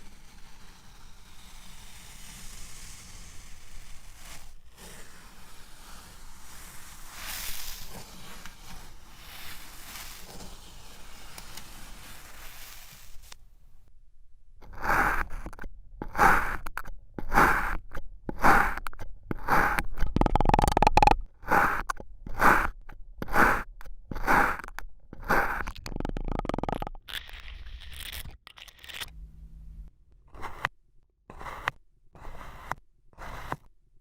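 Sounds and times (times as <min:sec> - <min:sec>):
soft sand scrape: 0:00.0 - 0:13.8, 0:14.6 - 0:19.8, 0:21.4 - 0:25.8, 0:29.1 - 0:30.7, 0:31.3 - 0:33.7
sand crunching under strokes: 0:03.3 - 0:13.4, 0:16.2 - 0:19.8, 0:21.4 - 0:25.7.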